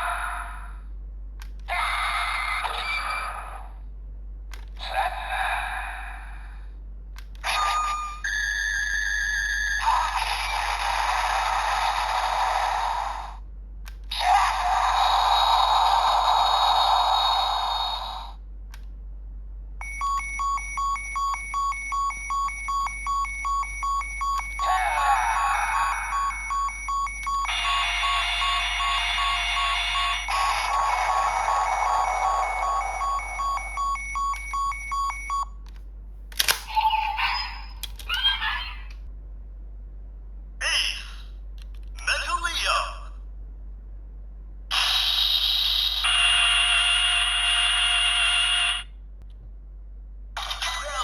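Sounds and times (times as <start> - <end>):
toy electronic sound effects: 7.4 - 13.3, 24.3 - 34.8, 44.7 - 48.9, 50.4 - 51.0
looping standby beep: 19.8 - 35.6.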